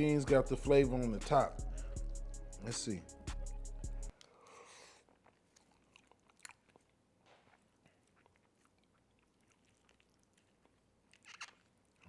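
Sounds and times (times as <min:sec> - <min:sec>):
man chewing: 0:04.1 - 0:12.0.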